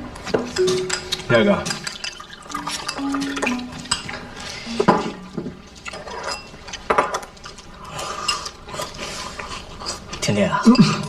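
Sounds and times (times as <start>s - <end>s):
dishes and cutlery clinking: 0.3s - 7.4s.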